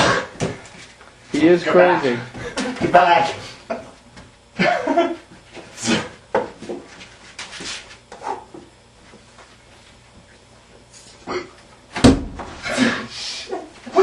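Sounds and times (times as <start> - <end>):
floppy disks hitting furniture: 11.9 - 12.7.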